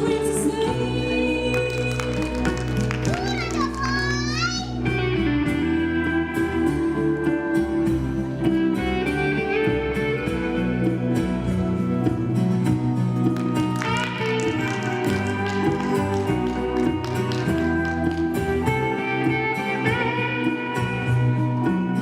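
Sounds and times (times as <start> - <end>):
plucked guitar: 1.2 - 22.0.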